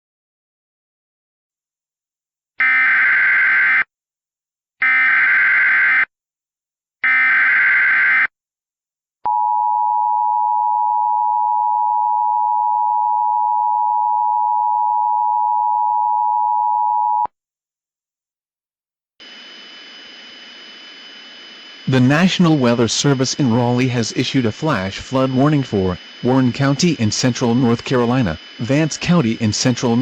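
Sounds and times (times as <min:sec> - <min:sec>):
steady attention tone: 0:19.2 - 0:30.0.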